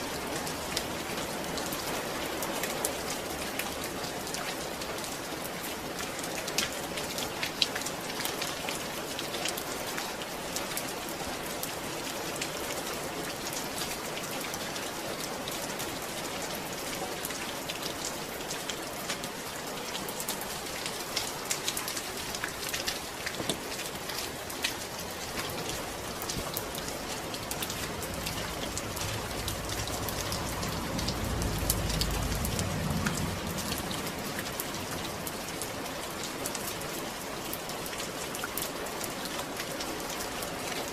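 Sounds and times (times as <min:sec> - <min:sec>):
steady rain: 0:00.0 - 0:40.9
deep low rumble: 0:26.0 - 0:35.2.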